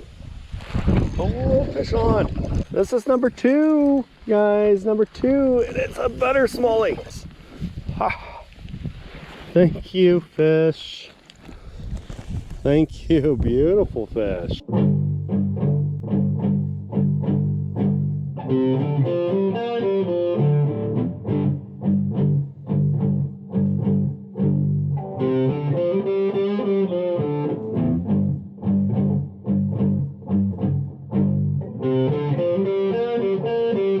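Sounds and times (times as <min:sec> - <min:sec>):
guitar-driven music with beat: 0:14.6 - 0:34.0.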